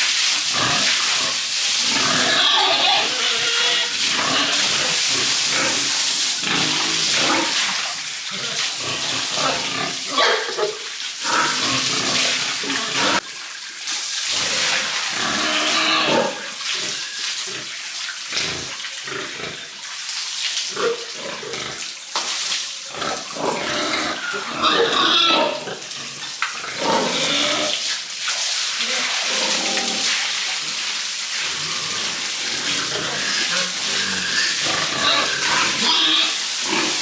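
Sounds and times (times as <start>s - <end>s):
water running and splashing: 0.0s - 37.0s
pigs grunting and squealing: 0.5s - 7.7s, 8.3s - 13.2s, 14.3s - 17.7s, 22.9s - 27.9s, 28.8s - 30.8s, 31.4s - 37.0s.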